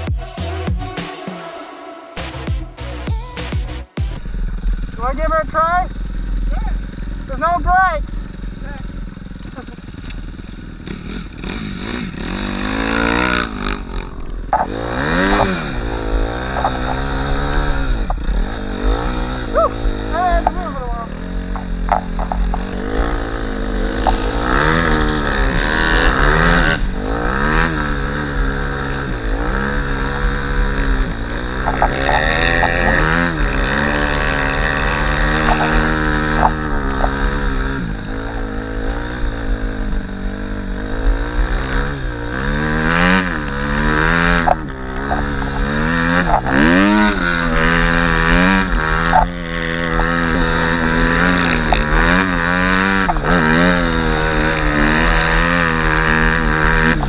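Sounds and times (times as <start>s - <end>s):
dirt bike engine revving: 0.0s - 57.0s.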